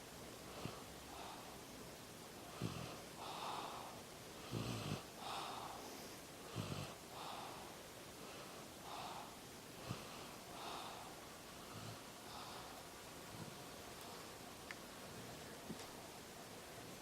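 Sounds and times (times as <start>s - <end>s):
soft snuffly breathing: 0.4s - 1.8s, 2.4s - 14.4s.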